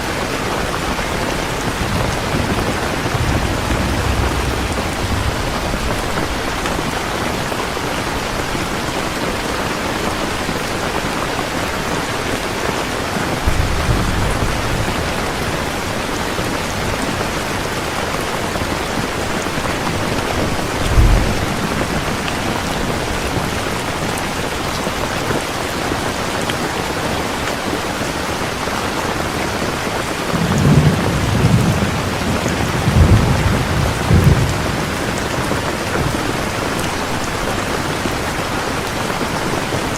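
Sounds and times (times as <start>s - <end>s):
distant thunder rumbling: 0.0s - 9.2s, 13.2s - 24.6s, 30.3s - 39.0s
heavy rain hissing: 0.0s - 39.9s.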